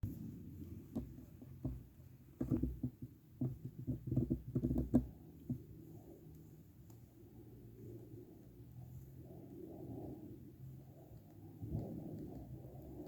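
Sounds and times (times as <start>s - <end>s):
soft taps and knocks: 0.6s - 7.0s.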